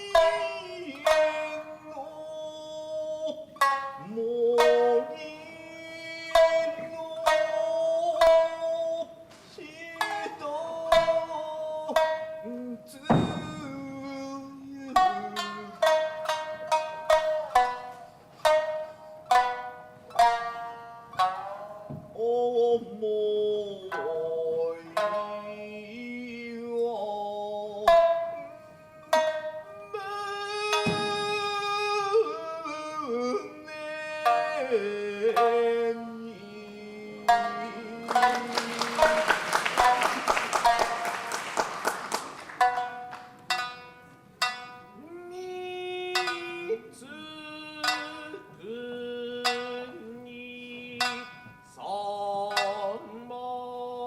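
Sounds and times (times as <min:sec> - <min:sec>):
person chanting long sung phrases: 0:00.0 - 0:16.0, 0:21.4 - 0:28.0, 0:28.8 - 0:41.6
shamisen plucking: 0:00.0 - 0:54.0
heavy struck accents: 0:13.0 - 0:17.9.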